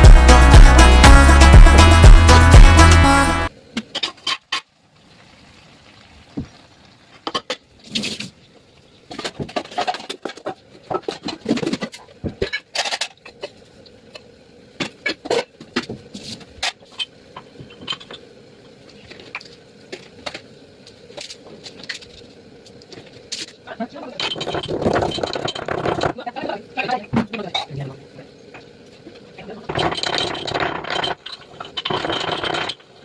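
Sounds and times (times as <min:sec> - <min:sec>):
kitchen utensils clicking: 0:23.4 - 0:26.2, 0:29.7 - 0:33.0.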